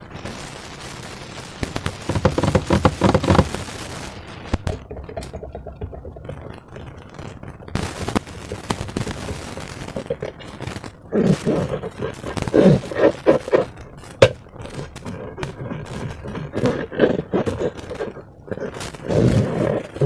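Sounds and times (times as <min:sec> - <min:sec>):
taps and scrapes: 0:01.6 - 0:03.6, 0:04.6 - 0:20.0
slime squishing: 0:04.6 - 0:20.0.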